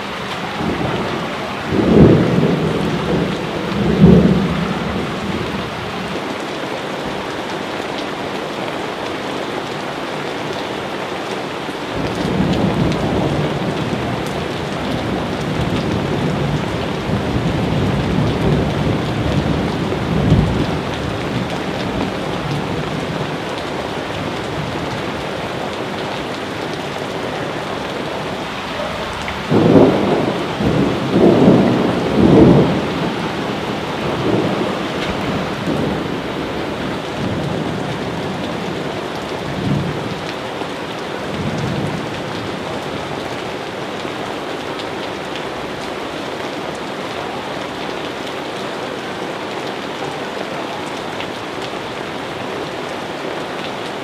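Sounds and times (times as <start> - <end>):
thunder rumbling: 0.0 - 6.2, 12.0 - 40.2
heavy rain: 0.0 - 54.0.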